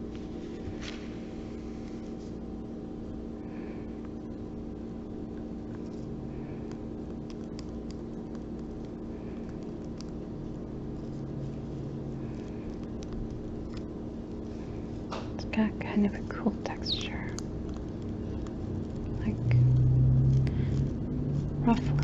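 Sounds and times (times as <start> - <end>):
steady low hum: 0.0 - 22.0
fingers scratching coconut husk: 5.7 - 22.0.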